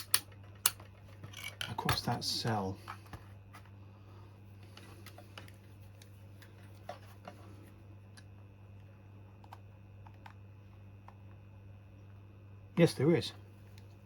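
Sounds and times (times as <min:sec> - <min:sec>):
multimeter probes clicking and tapping: 0:00.0 - 0:02.1
low electrical hum: 0:00.0 - 0:14.0.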